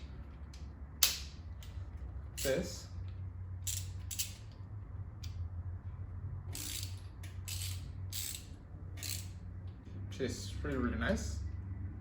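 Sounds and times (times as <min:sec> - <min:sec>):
ratchet wrench metallic clicks: 0:00.0 - 0:02.6, 0:03.6 - 0:04.6, 0:06.5 - 0:09.4
steady low hum: 0:00.0 - 0:12.0.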